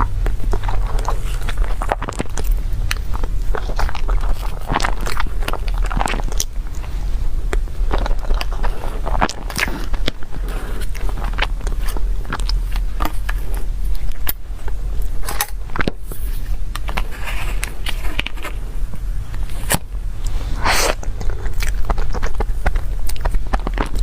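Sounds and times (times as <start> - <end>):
low hum: 0.0 - 24.0
wet mouth chewing clicks: 20.6 - 24.0.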